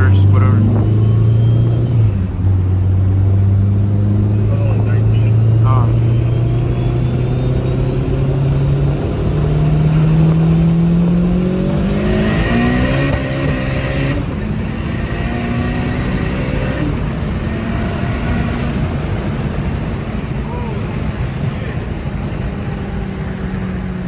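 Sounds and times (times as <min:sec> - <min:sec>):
car engine accelerating: 0:00.0 - 0:24.0
turbo whistle: 0:05.3 - 0:14.0.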